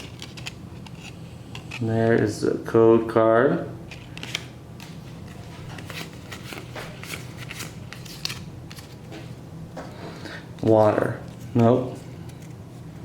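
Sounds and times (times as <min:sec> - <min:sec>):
trading cards clicking and rustling: 0:00.0 - 0:02.3, 0:03.9 - 0:09.3, 0:10.6 - 0:12.8
low steady hum: 0:00.0 - 0:13.0.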